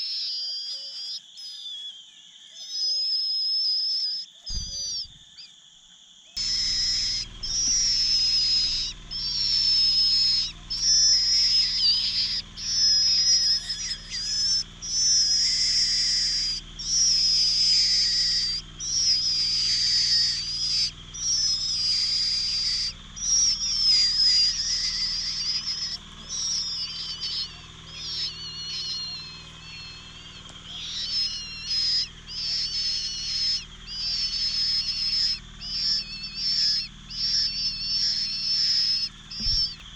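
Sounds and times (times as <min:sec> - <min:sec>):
cuckoo chick begging calls: 0:00.0 - 0:02.0, 0:02.6 - 0:05.2, 0:06.4 - 0:39.9.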